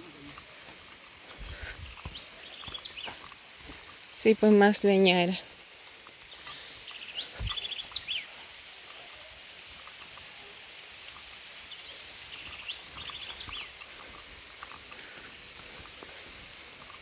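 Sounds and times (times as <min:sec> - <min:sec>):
light rain hiss: 0:00.0 - 0:17.0
songbird singing: 0:00.0 - 0:17.0.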